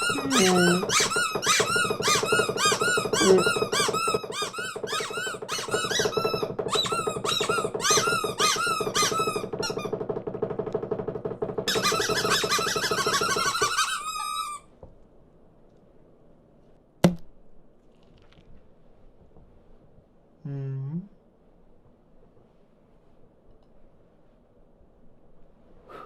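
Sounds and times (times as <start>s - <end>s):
cartoon birds chirping: 0.0s - 6.1s.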